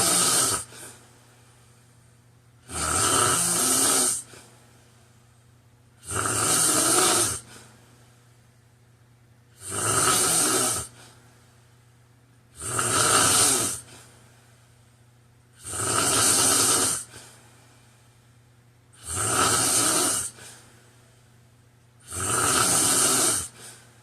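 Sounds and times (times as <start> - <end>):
man snoring: 0.0 - 0.9, 2.7 - 4.4, 6.0 - 7.5, 9.6 - 11.0, 12.6 - 13.9, 15.6 - 17.2, 19.0 - 20.5, 22.0 - 23.6
quiet breathing: 0.0 - 2.3, 4.0 - 5.5, 7.4 - 8.5, 10.8 - 12.0, 13.8 - 15.1, 17.0 - 19.1, 20.2 - 21.6, 23.4 - 24.0.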